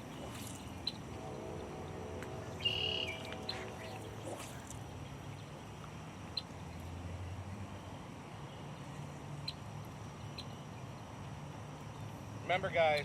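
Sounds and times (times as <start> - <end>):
low steady hum: 0.0 - 13.0
high bird chirps: 2.6 - 4.8.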